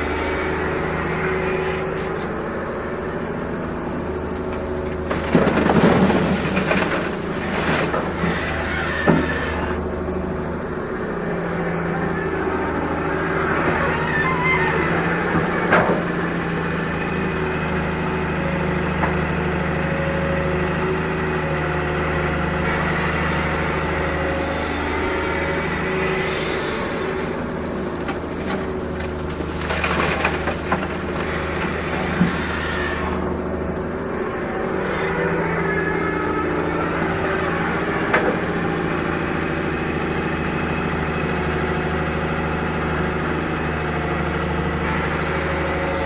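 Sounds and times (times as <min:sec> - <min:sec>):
excavator diesel engine running: 0:00.0 - 0:46.0
clatter of gravel and stones: 0:04.2 - 0:09.4, 0:27.1 - 0:32.6.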